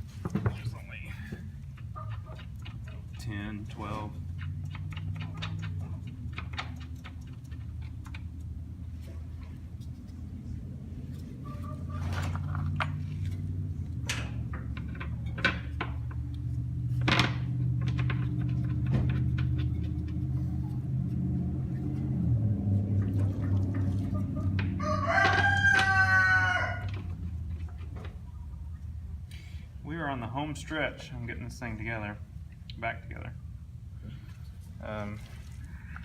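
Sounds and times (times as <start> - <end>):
steady low hum: 0.0 - 25.1
sharp clicks and knocks: 0.2 - 10.0, 12.3 - 26.0
rooster crowing: 24.7 - 26.9.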